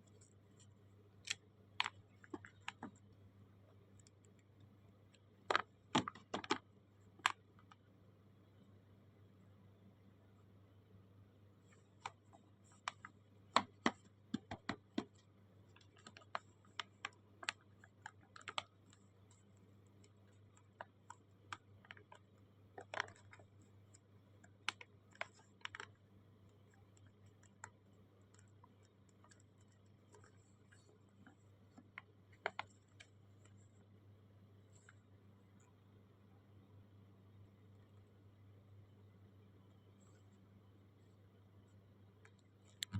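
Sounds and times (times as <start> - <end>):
light clicks and taps: 0.0 - 7.9, 11.6 - 34.0, 34.6 - 35.9, 42.2 - 42.9
low steady hum: 0.0 - 42.9.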